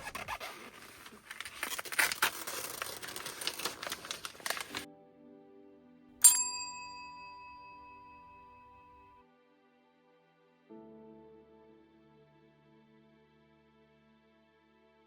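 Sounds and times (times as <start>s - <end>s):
crinkling crackling noise: 0.0s - 4.9s
bright chime ding: 6.2s - 9.1s.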